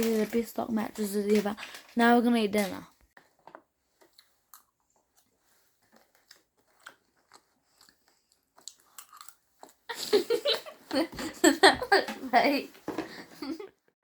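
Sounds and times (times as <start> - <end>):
people talking: 0.0 - 2.9, 9.9 - 12.8
people chewing and crunching: 3.2 - 11.5.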